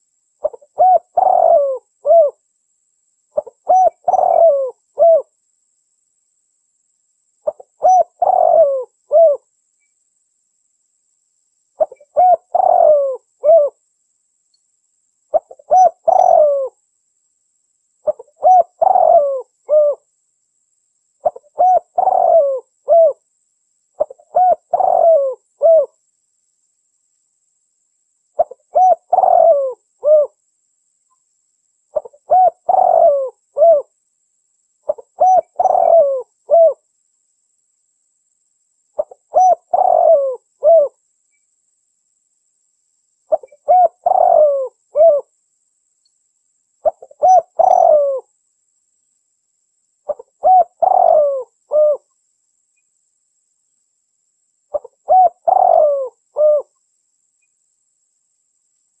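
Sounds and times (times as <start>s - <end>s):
dove cooing: 0.4s - 2.4s, 3.4s - 5.3s, 7.4s - 9.5s, 11.8s - 13.8s, 15.3s - 16.8s, 18.0s - 20.1s, 21.2s - 23.2s, 24.0s - 26.0s, 28.4s - 30.4s, 31.9s - 33.9s, 34.9s - 36.8s, 39.0s - 41.0s, 43.3s - 45.3s, 46.8s - 48.3s, 50.1s - 52.1s, 54.7s - 56.7s.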